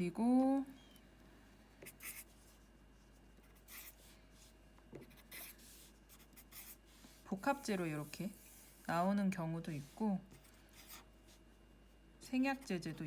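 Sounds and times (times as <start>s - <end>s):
pen scratching on paper: 1.8s - 2.5s, 3.4s - 4.1s, 5.0s - 8.9s.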